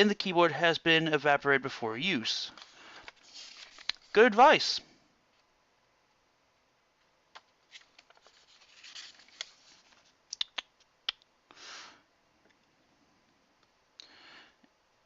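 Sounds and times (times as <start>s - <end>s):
paper rubbing and sliding: 2.6s - 4.1s, 7.6s - 10.2s.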